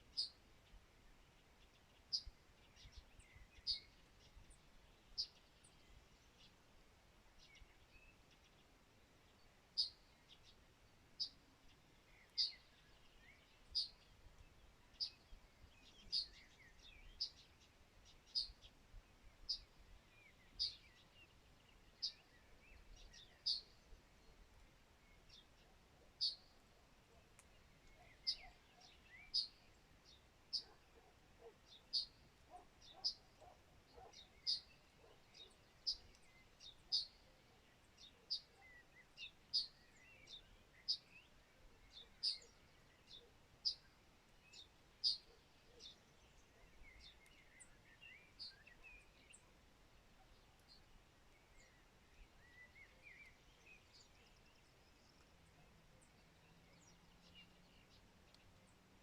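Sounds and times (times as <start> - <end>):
faint background hiss: 0.0 - 59.0
soft bird twittering: 51.4 - 58.8.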